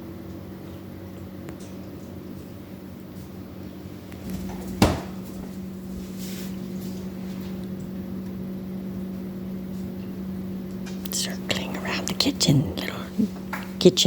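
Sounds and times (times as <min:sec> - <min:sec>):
low hum: 0:03.6 - 0:14.0
cupboard door shutting: 0:04.2 - 0:05.6.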